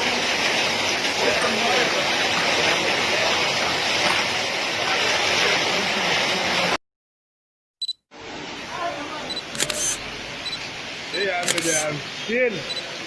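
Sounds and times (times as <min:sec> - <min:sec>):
heavy rain: 0:00.0 - 0:06.8, 0:08.1 - 0:13.0
running water: 0:00.0 - 0:06.8, 0:08.2 - 0:13.0.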